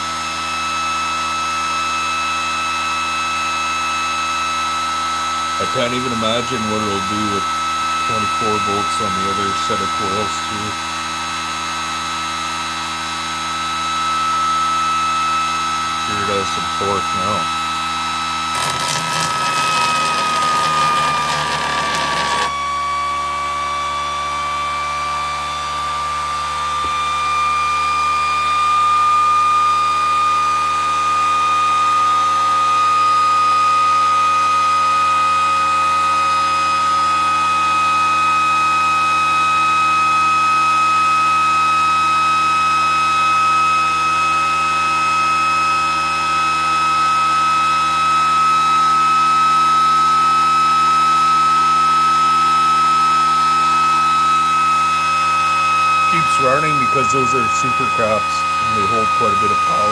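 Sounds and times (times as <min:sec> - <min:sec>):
motor high-pitched whine: 0:00.0 - 0:35.7, 0:39.0 - 0:59.9
rough rubbing noise: 0:18.5 - 0:22.5.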